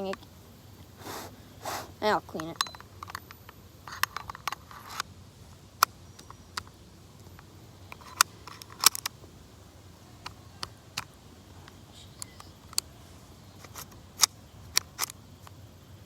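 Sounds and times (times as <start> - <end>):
pistol parts scraping: 0.8 - 5.1, 7.3 - 9.2, 13.5 - 15.2
plastic and metal parts clicking: 2.4 - 5.1, 5.8 - 9.2, 13.6 - 15.6.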